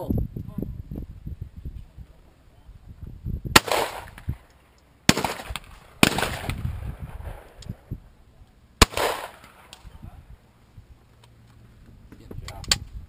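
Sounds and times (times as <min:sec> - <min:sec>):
shotgun shots echoing: 0:03.6 - 0:07.6, 0:08.8 - 0:09.9.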